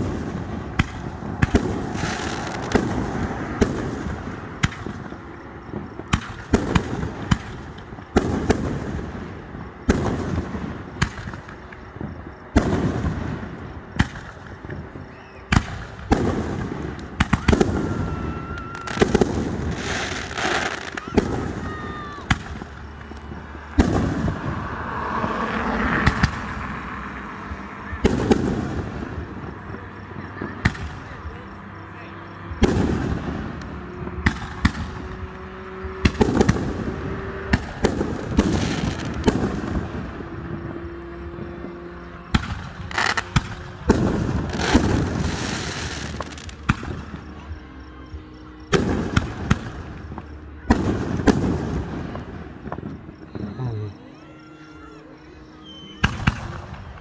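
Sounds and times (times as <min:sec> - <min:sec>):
fireworks crackling and rumbling: 0:00.0 - 0:57.0.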